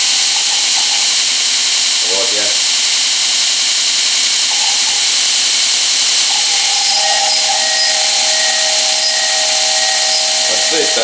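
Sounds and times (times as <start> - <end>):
electric motor hissing: 0.0 - 11.0
motor whistle tones: 4.3 - 11.0.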